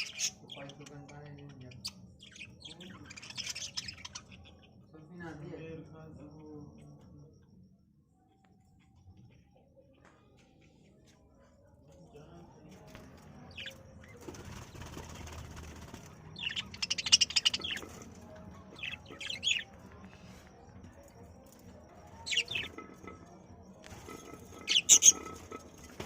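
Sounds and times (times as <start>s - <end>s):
budgerigars chirping: 0.0s - 0.8s, 1.4s - 4.6s, 13.5s - 13.8s, 16.4s - 18.0s, 18.8s - 19.7s, 22.2s - 22.8s, 24.6s - 25.3s
wings fluttering: 13.6s - 18.2s, 23.8s - 26.0s.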